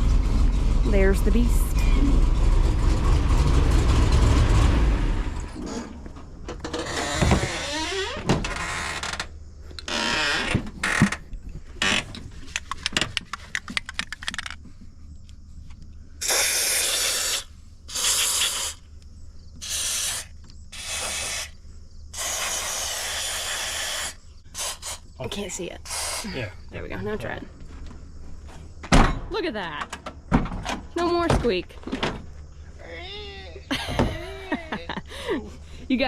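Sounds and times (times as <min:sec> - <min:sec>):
squeaking door hinge: 0:05.6 - 0:11.2
aerosol can spraying: 0:16.2 - 0:18.8, 0:22.2 - 0:25.0.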